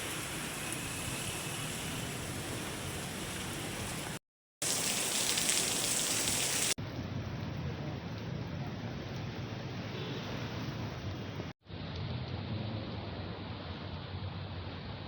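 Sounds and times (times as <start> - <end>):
rain hissing on surfaces: 0.0 - 6.8.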